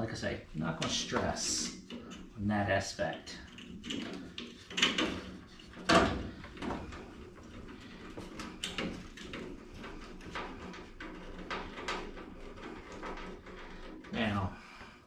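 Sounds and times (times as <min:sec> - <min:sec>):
metal grille knocks and clunks: 0:03.4 - 0:15.0.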